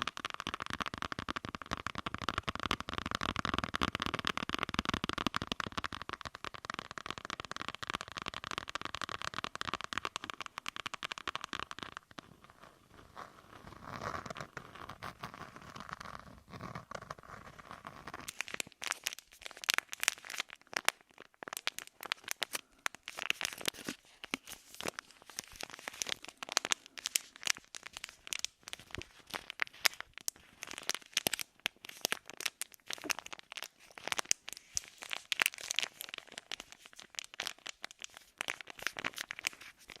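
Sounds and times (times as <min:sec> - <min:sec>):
crinkling and crackling: 0:00.0 - 0:40.0.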